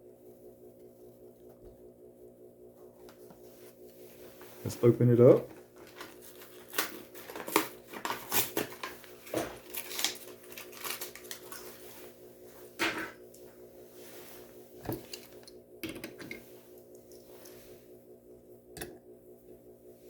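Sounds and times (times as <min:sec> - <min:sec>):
plastic packaging being torn open: 0:05.9 - 0:11.7.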